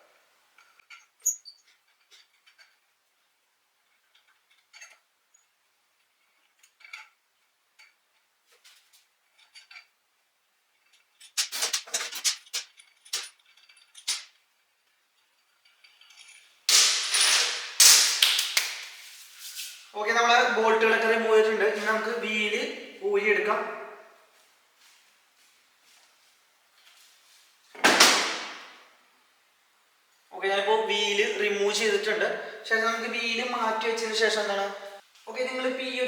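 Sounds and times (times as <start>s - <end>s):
metal clattering: 10.8s - 14.6s, 15.2s - 18.2s.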